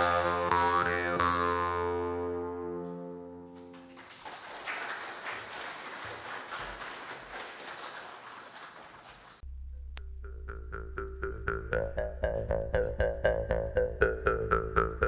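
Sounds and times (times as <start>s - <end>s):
music with low drone: 9.4s - 15.0s.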